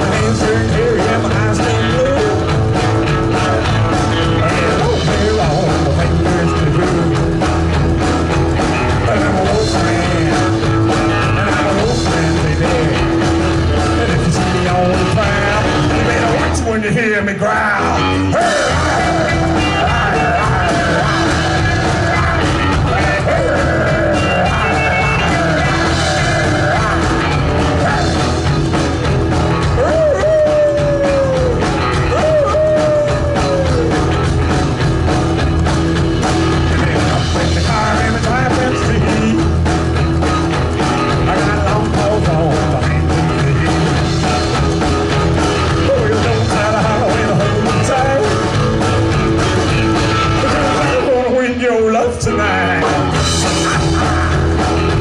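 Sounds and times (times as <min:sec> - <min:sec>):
rock band playing: 0:00.0 - 0:55.0
bent falling lead guitar notes: 0:17.8 - 0:51.4, 0:52.2 - 0:55.0.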